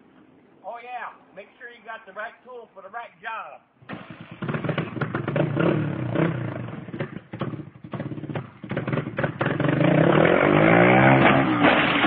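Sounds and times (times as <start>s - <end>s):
small engine knocking and revving: 3.8s - 12.0s.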